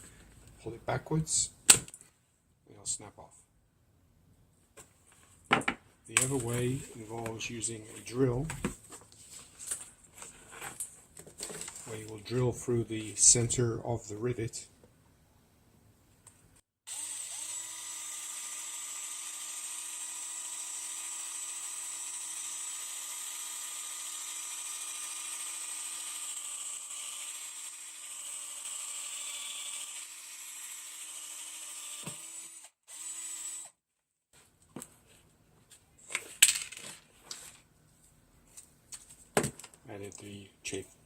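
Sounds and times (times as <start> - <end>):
drill boring through rivet: 16.9 - 33.8.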